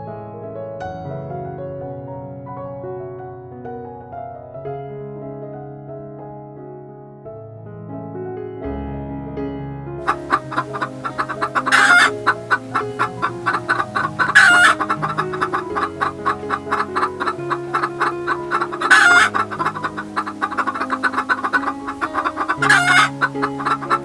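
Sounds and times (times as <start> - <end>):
soft piano music: 0.0 - 24.0
bird squawks: 10.1 - 24.0
birds clucking: 10.1 - 24.0.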